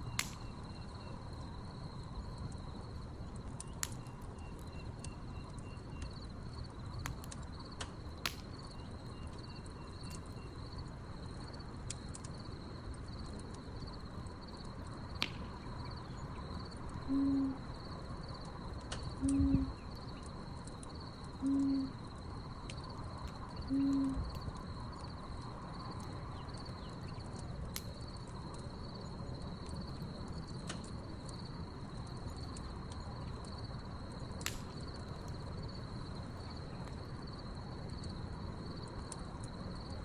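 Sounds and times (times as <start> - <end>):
crickets chirping: 0.0 - 40.0
wood fire crackling: 0.0 - 40.0
owl hooting: 17.1 - 17.6, 19.2 - 19.8, 21.4 - 22.0, 23.7 - 24.2.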